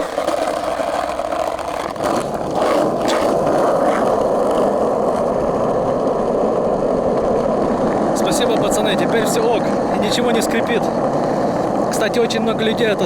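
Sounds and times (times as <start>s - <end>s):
skateboard wheels rolling on pavement: 0.0s - 13.0s.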